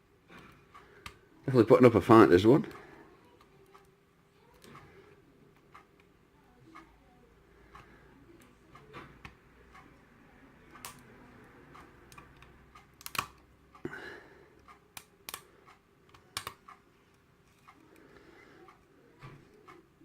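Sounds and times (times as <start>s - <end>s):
lock pick clicking on pins: 12.1s - 13.5s.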